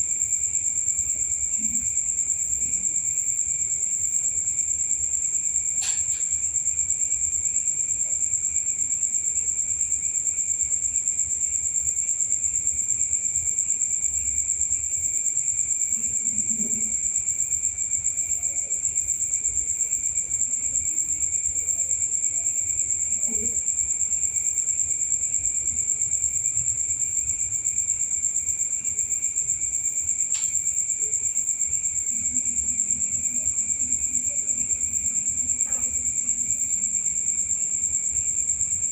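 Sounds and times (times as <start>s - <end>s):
insects trilling: 0.0s - 38.9s
faint sharp click: 30.3s - 30.7s.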